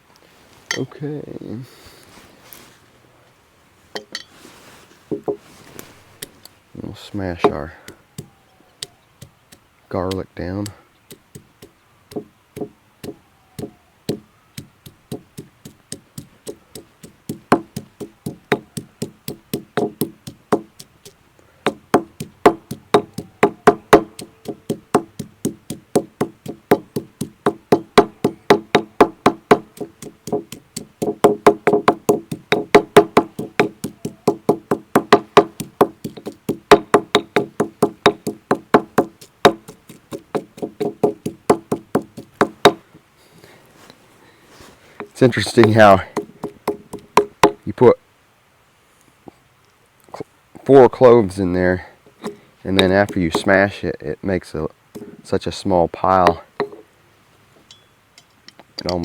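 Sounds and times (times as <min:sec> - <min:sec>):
garlic being pounded: 0:07.4 - 0:42.8, 0:45.0 - 0:47.6, 0:52.2 - 0:53.7.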